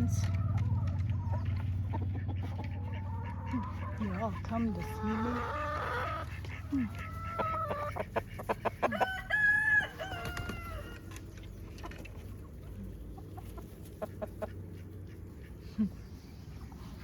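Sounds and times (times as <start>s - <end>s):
chickens clucking: 0.0s - 17.0s
rooster crowing: 8.8s - 11.1s.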